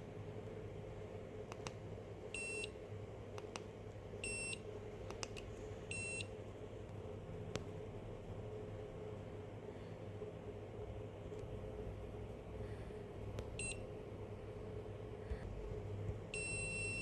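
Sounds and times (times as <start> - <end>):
low steady hum: 0.0 - 17.0
sharp clicks: 5.1 - 5.5.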